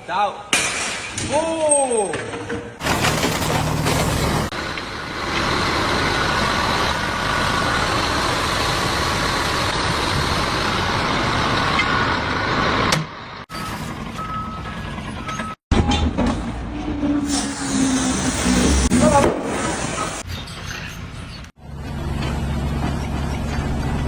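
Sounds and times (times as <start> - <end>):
heavy machinery running: 2.8 - 20.3.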